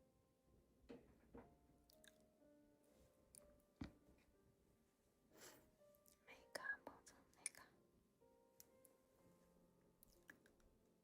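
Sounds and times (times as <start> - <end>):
faint background music tones: 0.0 - 11.0.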